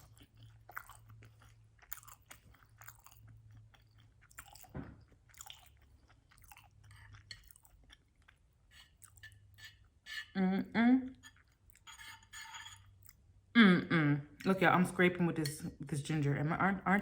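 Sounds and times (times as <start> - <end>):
chewing and lip smacking: 0.0 - 9.5.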